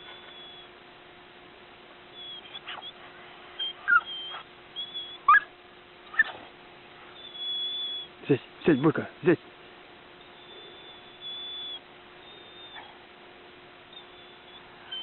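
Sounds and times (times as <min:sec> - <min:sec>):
dog whining and yelping: 0:00.0 - 0:00.8, 0:02.1 - 0:03.0, 0:03.6 - 0:08.2, 0:10.2 - 0:13.1, 0:13.9 - 0:15.0.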